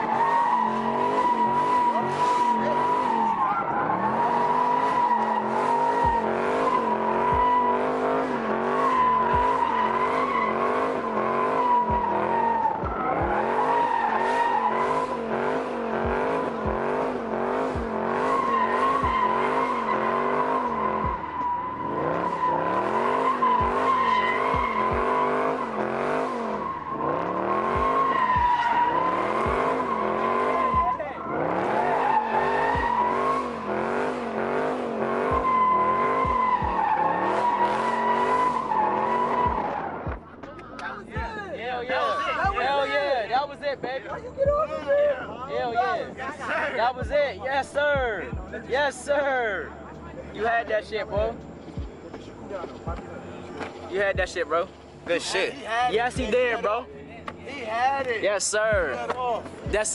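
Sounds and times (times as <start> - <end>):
car engine revving: 0.0 - 59.9
tyres squealing: 0.0 - 59.9.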